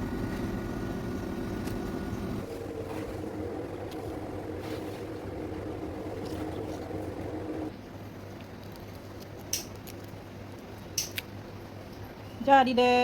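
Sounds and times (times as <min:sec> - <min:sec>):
low mechanical hum with tones: 0:00.0 - 0:13.0.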